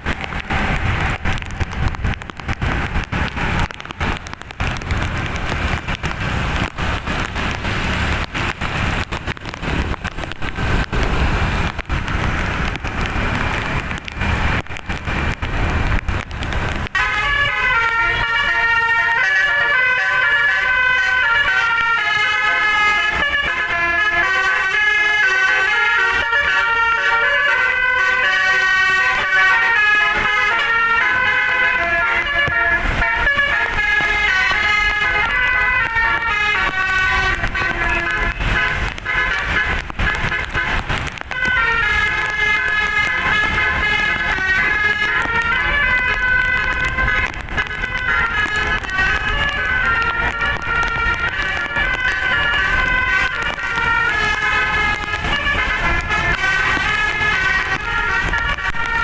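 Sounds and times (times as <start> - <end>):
noisy rush: 0.0 - 59.0
musical air horn melody: 17.0 - 59.0.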